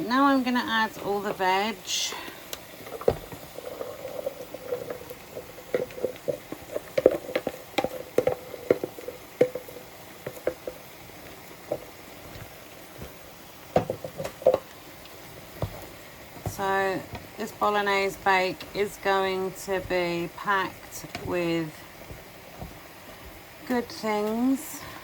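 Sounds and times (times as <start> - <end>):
mince frying: 0.0 - 25.0
taps and clatters: 2.5 - 10.9, 11.6 - 19.0
vegetables landing in frying pan: 2.6 - 24.6.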